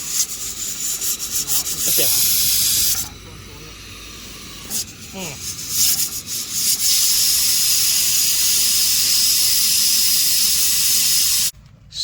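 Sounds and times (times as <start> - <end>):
pressure cooker hissing steam: 0.0 - 11.5.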